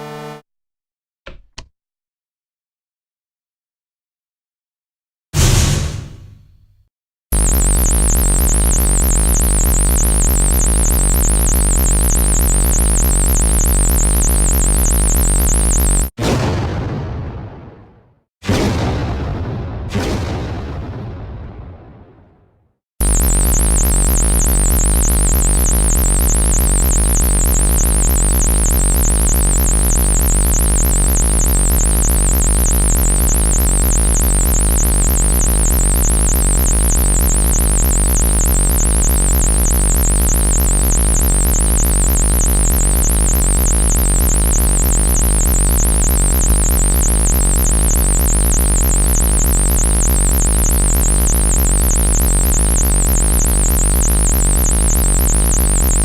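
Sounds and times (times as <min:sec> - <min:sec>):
synthesizer drone with deep hum: 0:00.0 - 0:00.4, 0:07.4 - 0:16.2, 0:23.0 - 0:56.0.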